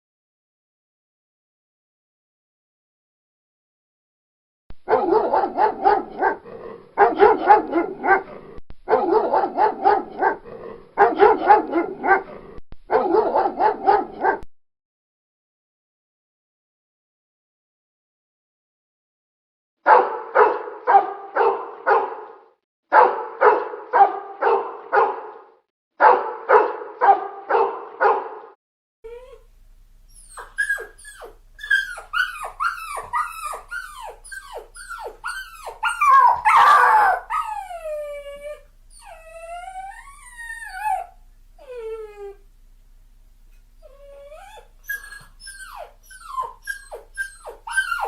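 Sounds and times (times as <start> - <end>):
dog barking: 4.9 - 6.4, 7.0 - 10.4, 11.0 - 14.4, 19.8 - 28.6, 30.8 - 37.6
dog whining: 29.1 - 29.5, 30.1 - 42.4, 43.8 - 48.0
dog yelping: 30.1 - 42.4, 43.8 - 48.0.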